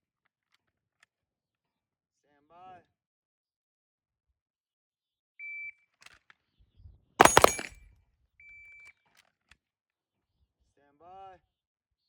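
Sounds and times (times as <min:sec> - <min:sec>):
rapid pistol shots: 0:07.2 - 0:07.7.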